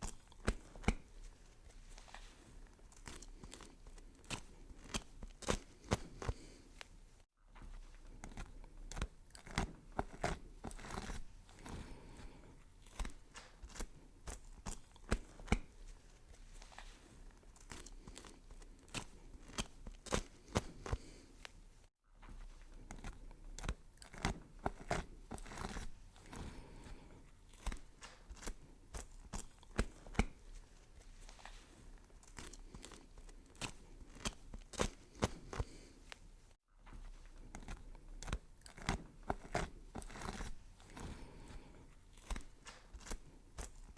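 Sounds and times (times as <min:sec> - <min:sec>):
knife chopping vegetables: 0:00.0 - 0:01.2, 0:03.0 - 0:06.6, 0:08.2 - 0:15.9, 0:17.6 - 0:21.2, 0:22.8 - 0:30.5, 0:32.3 - 0:35.9, 0:37.0 - 0:43.9.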